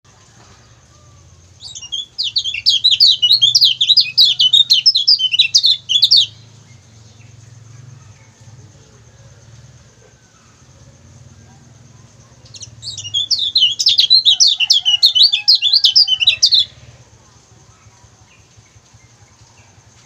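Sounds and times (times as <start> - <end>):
bird giving high chirps: 1.6 - 6.6, 12.4 - 16.8.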